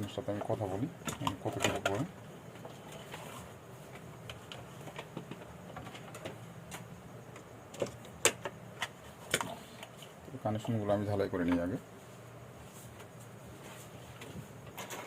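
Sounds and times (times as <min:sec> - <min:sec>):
faint steady hum: 0:00.0 - 0:15.0
tools clicking on a workbench: 0:01.0 - 0:02.1.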